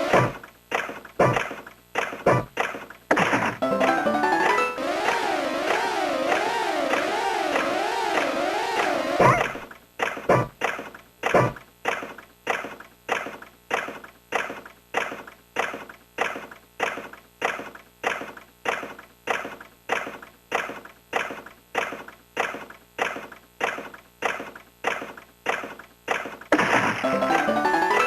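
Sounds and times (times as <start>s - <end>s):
pachinko machine clacking: 3.6s - 9.6s, 27.0s - 28.0s.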